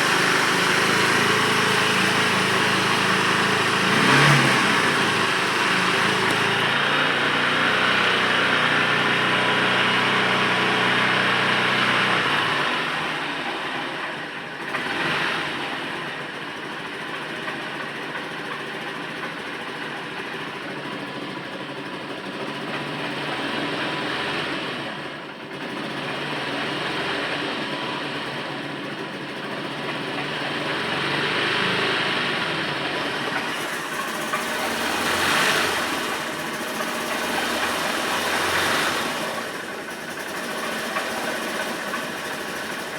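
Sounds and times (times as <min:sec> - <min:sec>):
engine running: 0:00.0 - 0:42.9.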